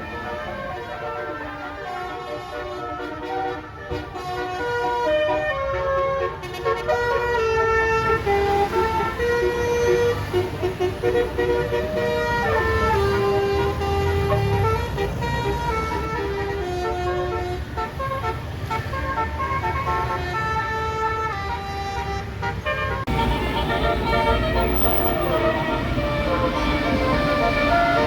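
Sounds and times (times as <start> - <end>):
air horn melody: 0.0 - 28.0
low engine rumble: 23.0 - 28.0.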